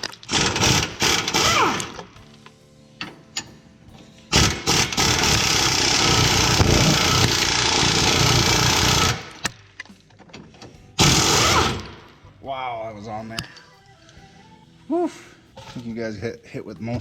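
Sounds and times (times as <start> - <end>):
impact wrench hammering: 0.0 - 2.1, 4.3 - 9.6, 10.3 - 12.1.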